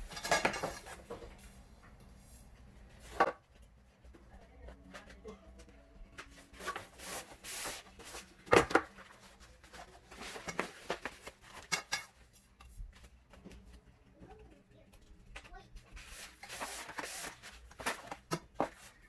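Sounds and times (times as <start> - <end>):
plastic parts clicking and knocking: 0.0 - 1.3, 8.4 - 14.2, 16.8 - 19.0.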